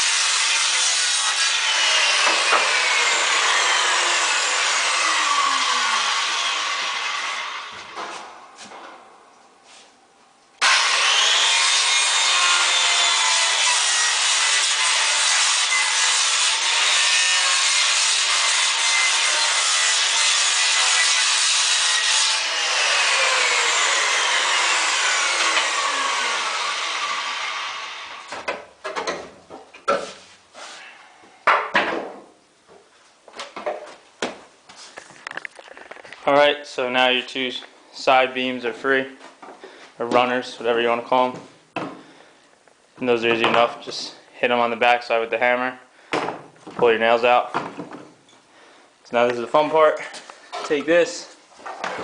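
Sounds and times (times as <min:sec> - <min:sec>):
circular saw cutting wood: 0:00.0 - 0:08.0, 0:10.6 - 0:28.4.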